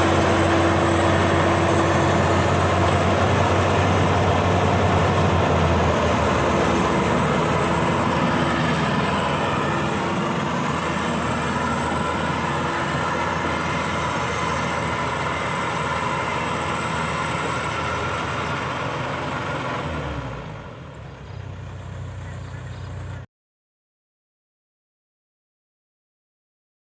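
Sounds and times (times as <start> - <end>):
combine harvester running: 0.0 - 23.3.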